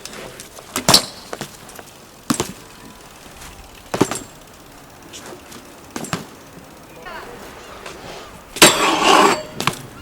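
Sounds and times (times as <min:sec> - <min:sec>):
sharp knocks on bike: 0:00.7 - 0:02.7, 0:03.9 - 0:04.4, 0:05.9 - 0:06.4, 0:08.6 - 0:10.0.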